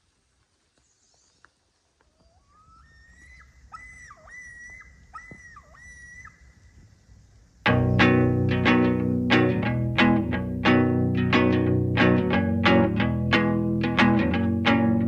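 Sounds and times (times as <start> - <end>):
animal calls: 2.2 - 6.6.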